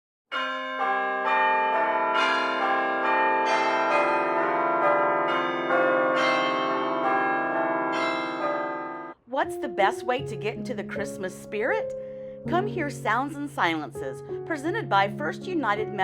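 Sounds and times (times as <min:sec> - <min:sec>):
church bells ringing a peal: 0:00.3 - 0:09.2.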